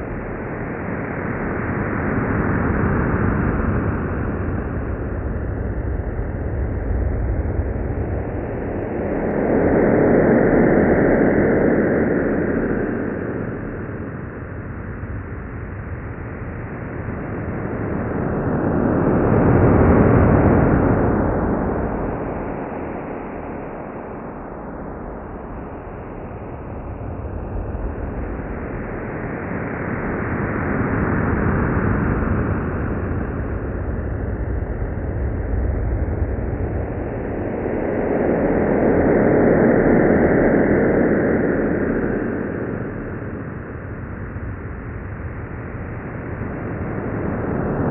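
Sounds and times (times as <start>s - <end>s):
low noisy rumbling drone: 0.0s - 47.9s.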